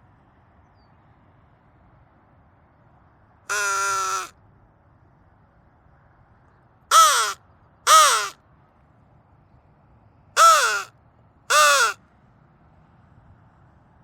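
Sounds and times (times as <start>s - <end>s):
crow call caws: 3.5s - 4.3s, 6.9s - 8.4s, 10.4s - 10.9s, 11.5s - 12.0s.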